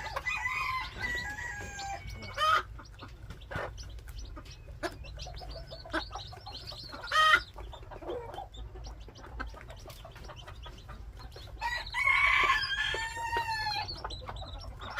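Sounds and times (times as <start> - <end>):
rooster crowing: 0.0 - 2.3, 11.6 - 14.0
chickens clucking: 0.0 - 14.9.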